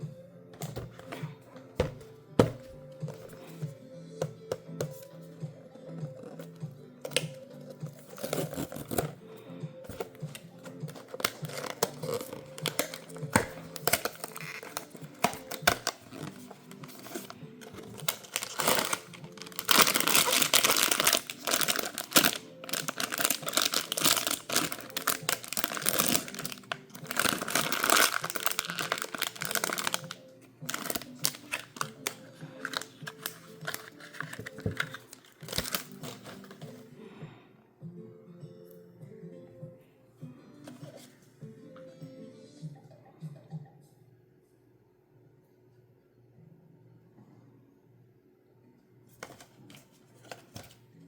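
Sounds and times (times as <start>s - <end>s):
soft background music: 0.0s - 51.0s
packaging crinkling: 8.0s - 9.2s, 9.9s - 36.8s.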